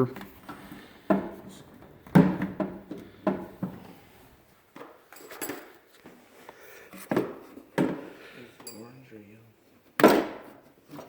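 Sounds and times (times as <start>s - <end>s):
plastic parts knocking and scraping: 0.2s - 4.0s.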